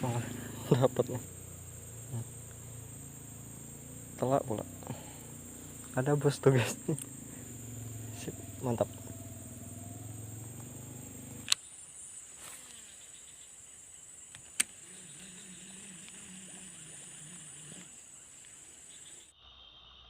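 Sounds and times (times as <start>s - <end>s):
insects chirring: 0.0s - 20.0s
sharp clicks: 6.9s - 7.2s, 10.5s - 11.6s, 14.3s - 14.8s.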